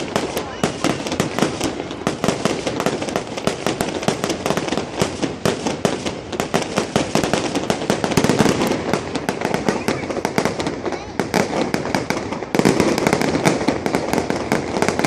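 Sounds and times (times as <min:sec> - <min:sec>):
fireworks bangs and crackles: 0:00.0 - 0:15.0.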